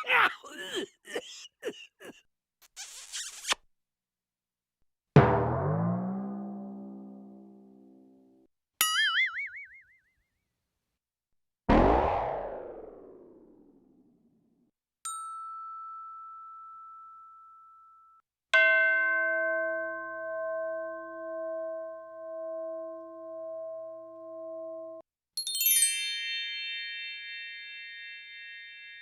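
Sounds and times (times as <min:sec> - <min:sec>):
sparkling high tinkles and chime: 0:25.4 - 0:29.0.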